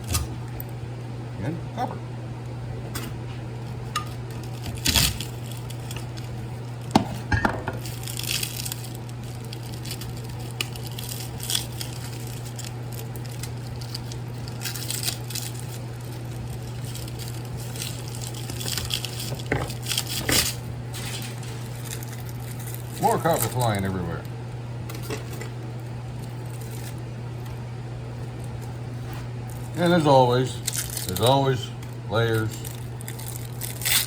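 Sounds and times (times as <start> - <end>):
steady low hum: 0.0 - 34.0
scraping and rustling: 7.8 - 23.6.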